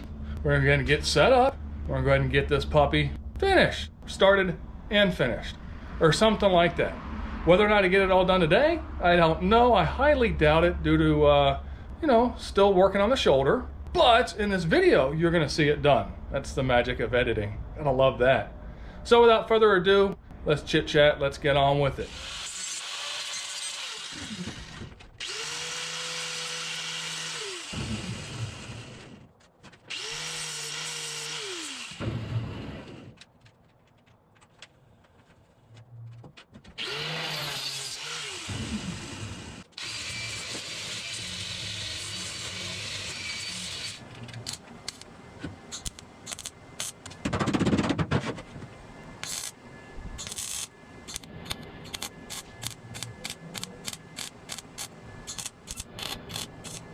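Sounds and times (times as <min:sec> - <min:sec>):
power tool whining on metal: 0:22.1 - 0:29.3, 0:29.9 - 0:33.1, 0:36.8 - 0:44.6, 0:50.2 - 0:56.9.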